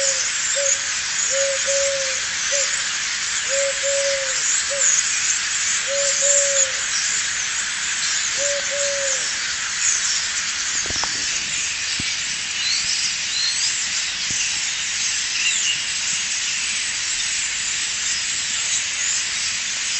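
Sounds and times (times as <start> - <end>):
low hooting bird call: 0.0 - 5.1, 5.8 - 7.0, 8.3 - 9.8
steady hiss: 0.0 - 19.9.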